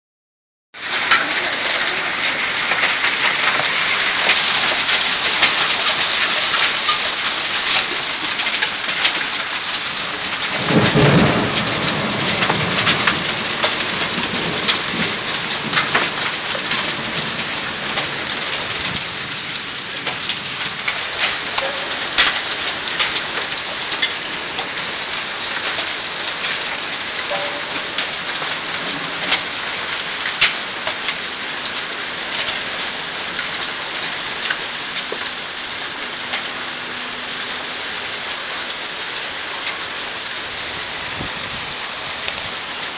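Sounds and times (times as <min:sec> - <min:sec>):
heavy rain: 0:00.8 - 0:42.9
low roll of thunder: 0:10.4 - 0:18.0.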